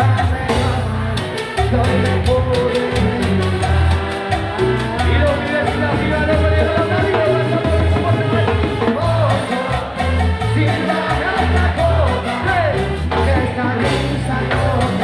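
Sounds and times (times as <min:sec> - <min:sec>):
person singing: 0:00.0 - 0:15.0
repeating bass line: 0:00.0 - 0:15.0
upbeat latin band music: 0:00.0 - 0:15.0.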